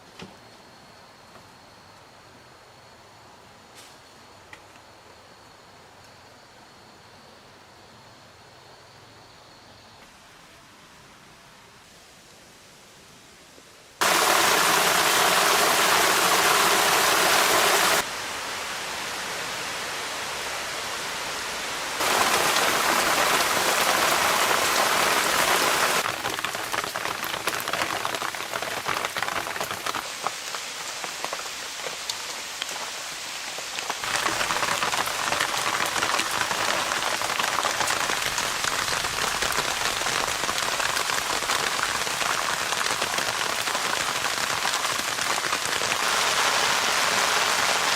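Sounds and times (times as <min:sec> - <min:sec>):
heavy rain falling: 0:14.0 - 0:47.9.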